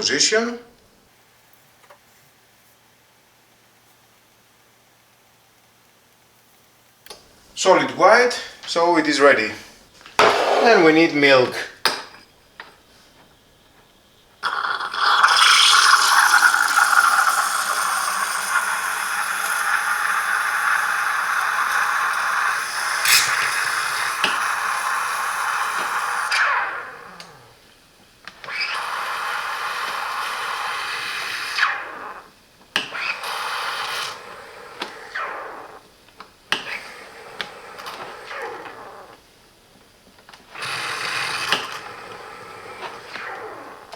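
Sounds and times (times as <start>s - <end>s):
steam wand hissing: 13.9s - 26.8s.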